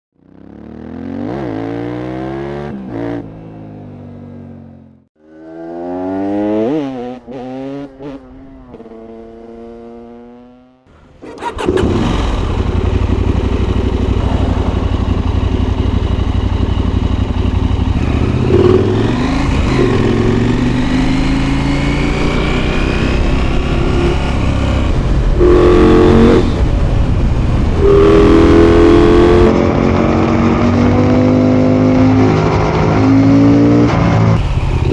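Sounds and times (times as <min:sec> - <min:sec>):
motorcycle engine revving: 0:00.2 - 0:34.9
wind noise: 0:11.3 - 0:30.9.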